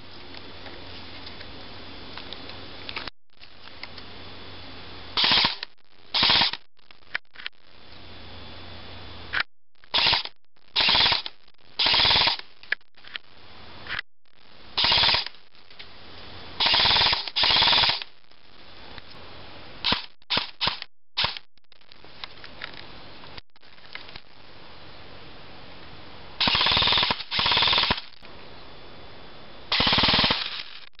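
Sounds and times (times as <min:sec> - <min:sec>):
airsoft gun automatic bursts: 0:05.2 - 0:06.7, 0:09.9 - 0:12.5, 0:14.8 - 0:15.4, 0:16.6 - 0:18.1, 0:19.8 - 0:21.4, 0:26.4 - 0:28.2, 0:29.7 - 0:30.9.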